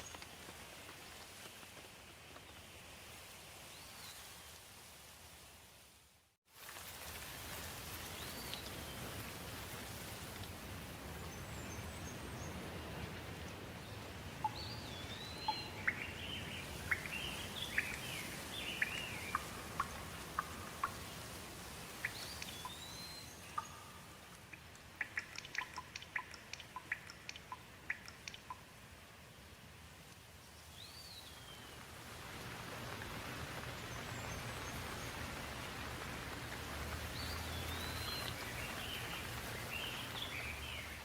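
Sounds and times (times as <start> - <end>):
steady rain falling: 0.0 - 41.0
water dripping: 6.6 - 11.3, 13.0 - 29.1, 30.0 - 41.0.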